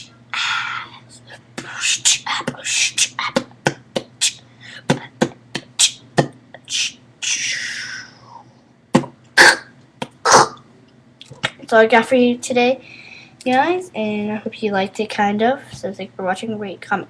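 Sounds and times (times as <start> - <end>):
beatboxing hiss: 0.0 - 8.4, 9.4 - 10.6
beatboxing clicks and pops: 1.6 - 6.9, 8.9 - 10.6.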